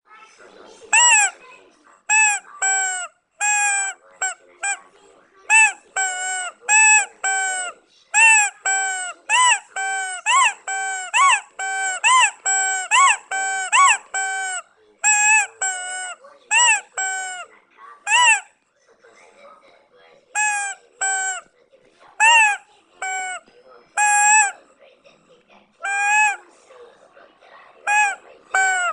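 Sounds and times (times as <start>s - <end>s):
chicken squawking: 2.1s - 4.8s, 5.5s - 17.4s, 22.2s - 23.4s, 24.0s - 24.6s, 25.8s - 26.4s, 27.9s - 28.9s.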